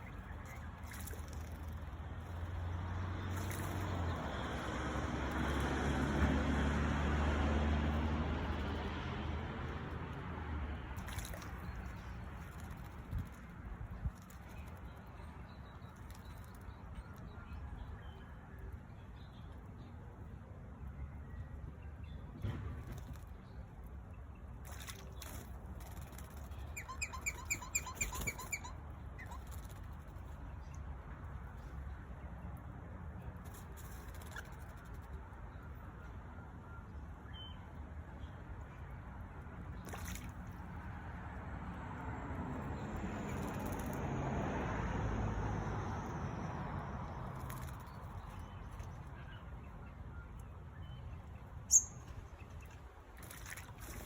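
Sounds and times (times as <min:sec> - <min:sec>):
passing vehicle engine hum: 0:00.0 - 0:15.4, 0:38.0 - 0:54.0
bird calling: 0:26.6 - 0:29.5.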